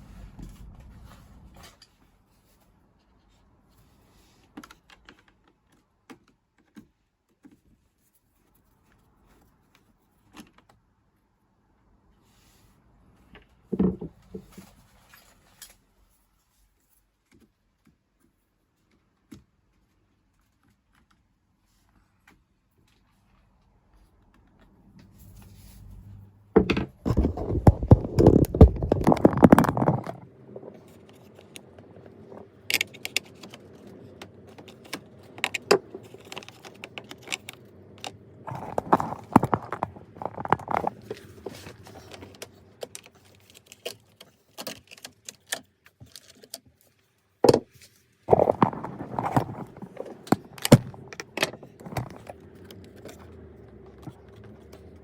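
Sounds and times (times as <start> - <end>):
tools and metal parts clattering: 26.6 - 46.6.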